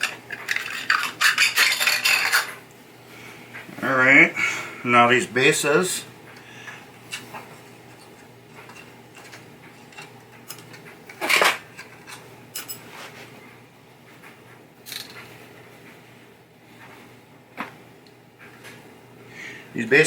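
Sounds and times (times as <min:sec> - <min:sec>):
parts clattering: 0:00.0 - 0:02.6, 0:07.1 - 0:13.2, 0:14.8 - 0:15.3.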